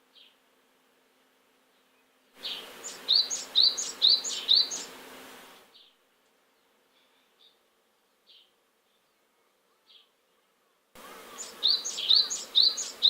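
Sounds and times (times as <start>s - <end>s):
faint high chirps: 2.4s - 5.0s, 11.0s - 13.0s.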